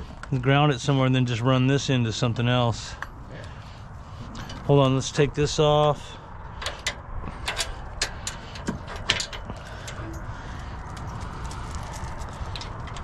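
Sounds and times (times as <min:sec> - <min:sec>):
steady background hiss: 0:00.0 - 0:06.9.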